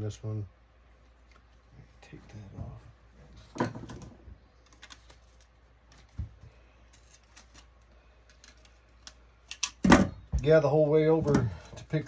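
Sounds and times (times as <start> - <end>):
faint clicks and taps of parts: 4.6 - 10.5.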